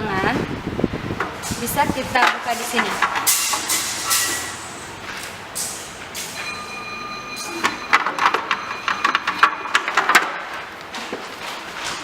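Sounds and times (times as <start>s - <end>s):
high steady ring: 6.3s - 9.4s.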